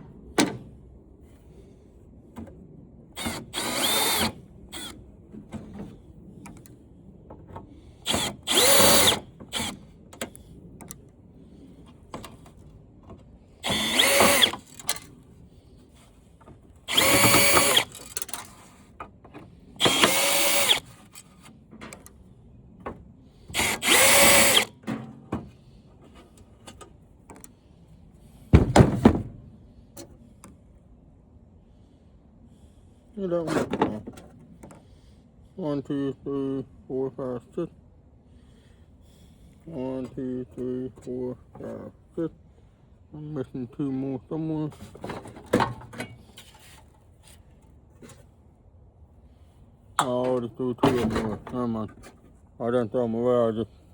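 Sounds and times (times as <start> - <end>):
power drill whirring: 3.2 - 5.0, 8.0 - 9.8, 13.6 - 15.1, 16.9 - 18.6, 19.8 - 21.2, 23.5 - 24.8.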